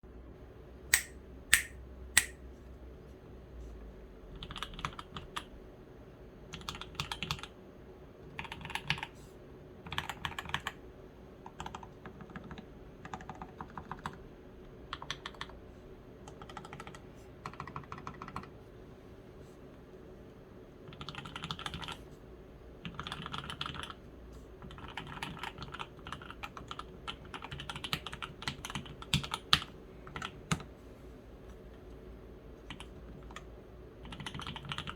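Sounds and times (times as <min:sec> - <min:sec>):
sharp clicks: 0:01.0 - 0:02.4
mechanical keyboard typing: 0:04.4 - 0:05.5, 0:06.5 - 0:07.5, 0:08.3 - 0:09.1, 0:09.8 - 0:10.8, 0:11.4 - 0:14.2, 0:14.9 - 0:15.6, 0:16.3 - 0:18.5, 0:20.9 - 0:22.0, 0:22.8 - 0:24.0, 0:24.6 - 0:30.7, 0:32.7 - 0:34.9.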